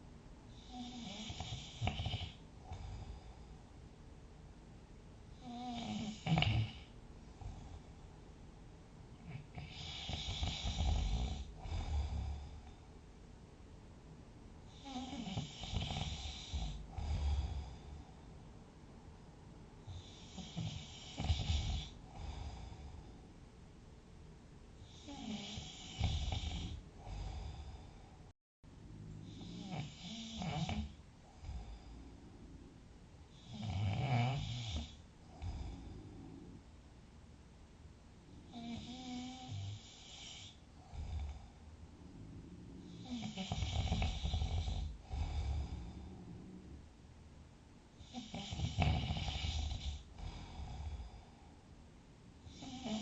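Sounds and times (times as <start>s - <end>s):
soft breathing: 0.0s - 4.0s, 5.3s - 8.5s, 9.1s - 13.2s, 14.6s - 18.7s, 19.8s - 23.7s, 24.8s - 28.3s, 29.0s - 36.8s, 38.2s - 47.0s, 47.9s - 53.0s
loud snoring: 0.6s - 3.3s, 5.4s - 6.9s, 9.2s - 12.7s, 14.7s - 17.9s, 19.9s - 23.0s, 24.9s - 28.0s, 29.2s - 32.5s, 33.3s - 36.6s, 38.5s - 46.8s, 48.0s - 51.3s, 52.5s - 53.0s.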